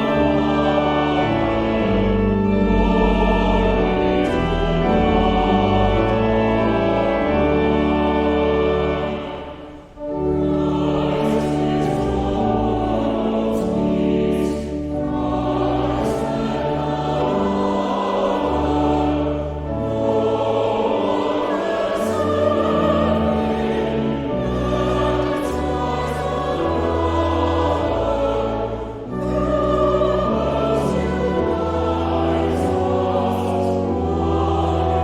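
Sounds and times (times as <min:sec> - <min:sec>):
choir singing a hymn: 0:00.0 - 0:35.0
organ: 0:00.0 - 0:35.0.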